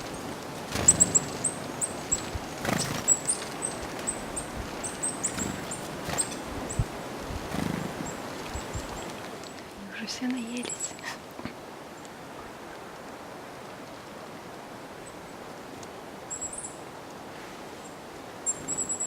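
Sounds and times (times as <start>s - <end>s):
high thin bird calls: 0.7s - 6.9s.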